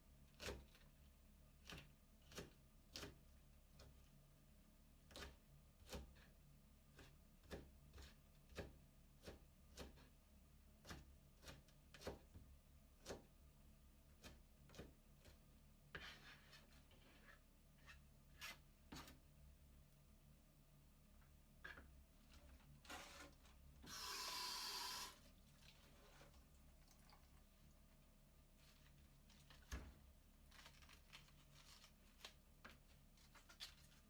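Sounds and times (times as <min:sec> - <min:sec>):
knife shredding cabbage: 0:00.3 - 0:04.2, 0:28.5 - 0:34.0.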